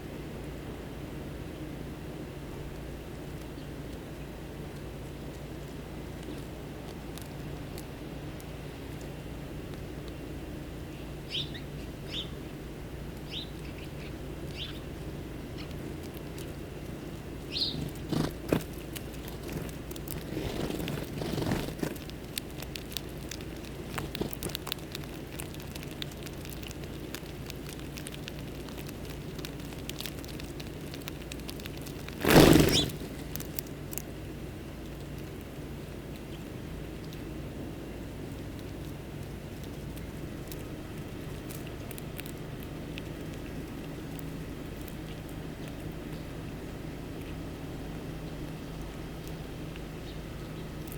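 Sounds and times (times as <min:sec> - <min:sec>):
steady low hum: 0:00.0 - 0:50.9
birds rustling and pecking: 0:02.5 - 0:50.9
songbirds chirping: 0:02.7 - 0:50.9
loud rustling flurry: 0:17.8 - 0:22.1, 0:31.9 - 0:33.4.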